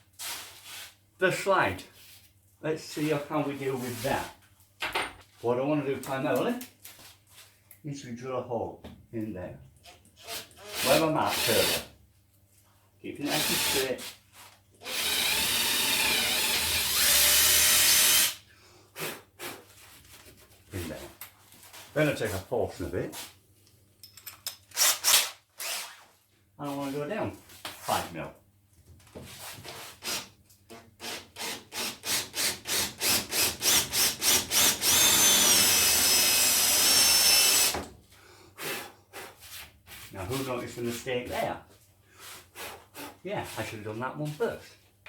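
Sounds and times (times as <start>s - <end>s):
power drill boring: 13.3s - 13.9s, 14.8s - 18.4s, 31.0s - 37.8s
hand saw cutting: 31.1s - 37.8s
power tool whining: 33.6s - 37.7s.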